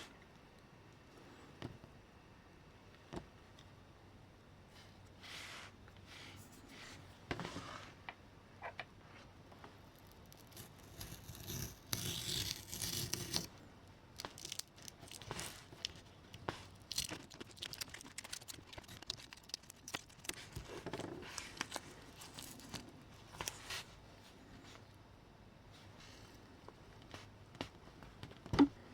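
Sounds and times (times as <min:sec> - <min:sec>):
rustling and scraping: 0:14.2 - 0:24.8.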